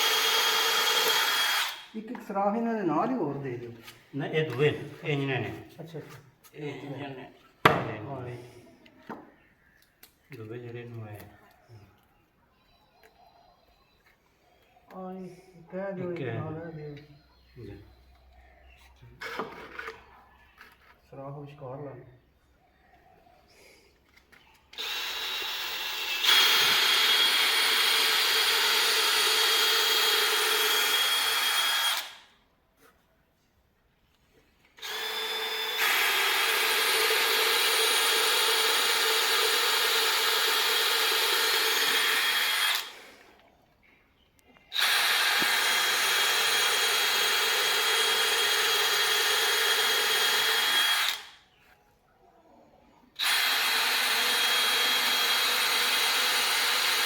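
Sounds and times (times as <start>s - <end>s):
electric power tool running: 0.0s - 2.0s, 24.7s - 32.2s, 34.8s - 43.0s, 44.7s - 51.3s, 53.2s - 57.0s.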